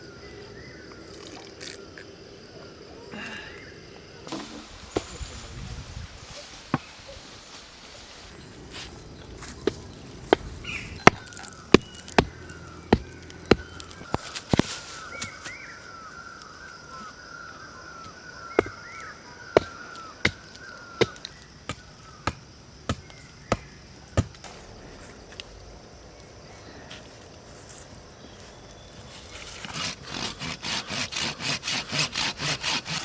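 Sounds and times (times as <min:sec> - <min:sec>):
knife chopping: 0:09.6 - 0:14.6.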